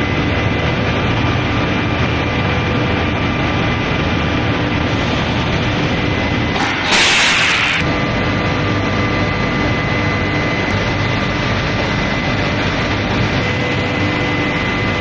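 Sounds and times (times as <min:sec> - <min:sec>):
machinery drone and hum: 0:06.0 - 0:08.1
loud hiss burst: 0:06.6 - 0:07.9.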